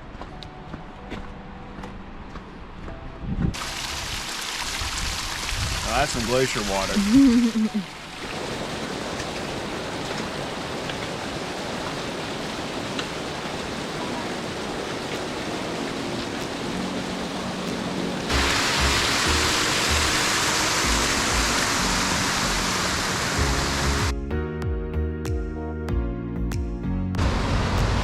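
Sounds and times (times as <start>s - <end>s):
soft background music: 0.0s - 4.3s, 5.9s - 8.0s, 14.6s - 27.3s
meltwater rushing: 3.5s - 24.1s.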